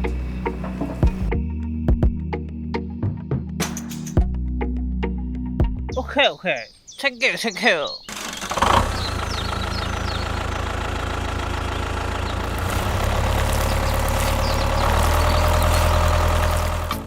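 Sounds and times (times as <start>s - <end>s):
engine running with low rumble: 0.0s - 1.3s, 8.1s - 17.0s.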